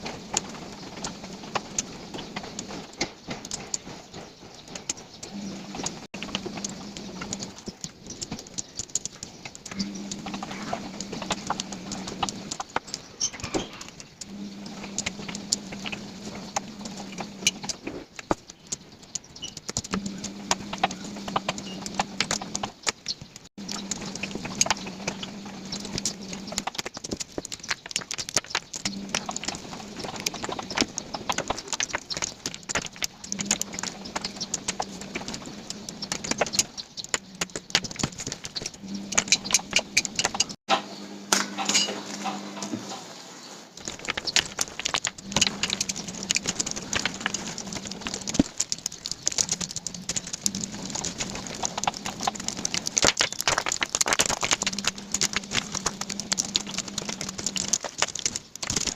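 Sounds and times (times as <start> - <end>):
jigsaw puzzle pieces clicking: 13.9 - 40.6, 43.8 - 58.9.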